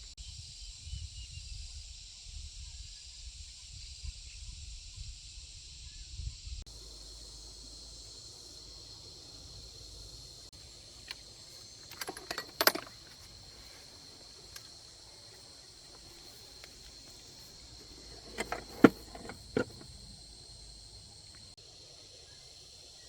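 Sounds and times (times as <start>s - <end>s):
insects chirring: 0.2s - 23.0s
metallic clinks and clanks: 6.7s - 21.5s.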